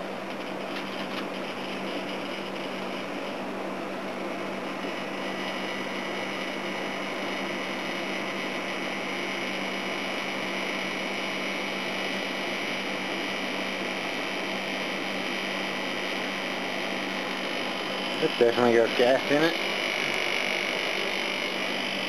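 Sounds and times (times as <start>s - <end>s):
air conditioner humming: 12.2s - 22.0s.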